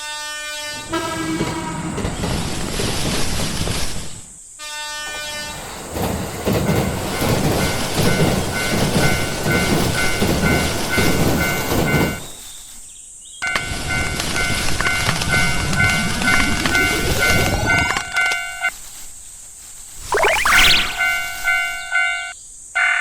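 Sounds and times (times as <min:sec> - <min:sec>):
train wheels clattering: 0:05.5 - 0:12.4
horn-like tone: 0:20.1 - 0:21.4.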